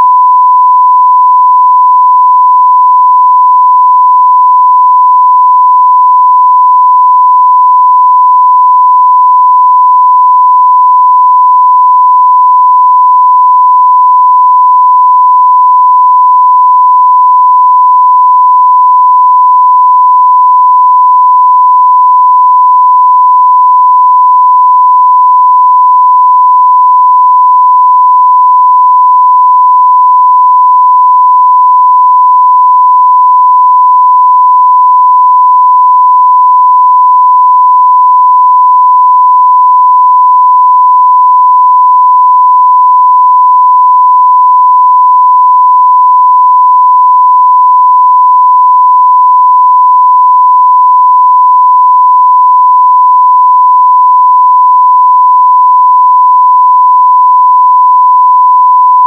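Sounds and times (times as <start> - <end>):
sine-wave test tone: 0.0 - 59.0.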